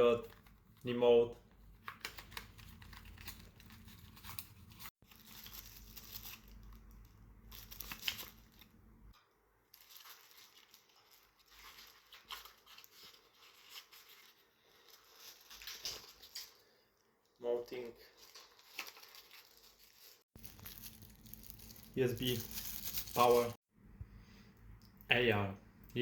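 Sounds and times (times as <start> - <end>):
packaging crinkling and rustling: 1.7 - 8.8, 9.7 - 16.7, 17.7 - 23.6.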